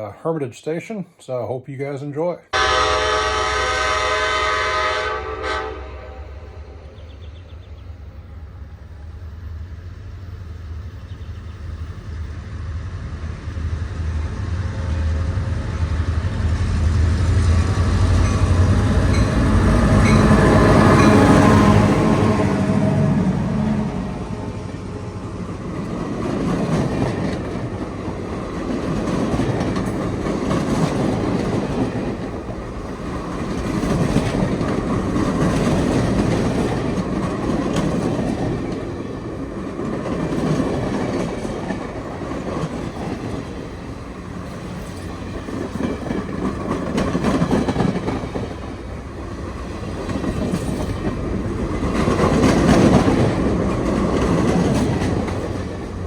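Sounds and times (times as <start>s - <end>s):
train rumble: 2.6s - 56.0s
train wheels clacking: 16.0s - 22.9s, 25.2s - 56.0s.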